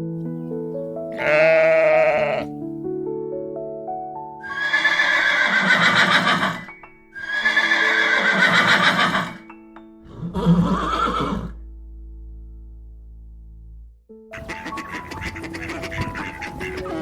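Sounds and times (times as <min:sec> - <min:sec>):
background music: 0:00.0 - 0:17.0
horse whinnying: 0:01.2 - 0:02.5, 0:04.4 - 0:09.4, 0:10.0 - 0:11.6.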